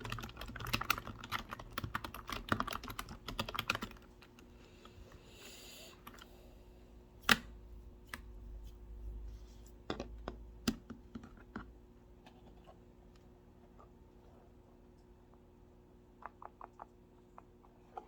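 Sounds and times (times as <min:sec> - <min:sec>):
keyboard typing: 0:00.0 - 0:04.1.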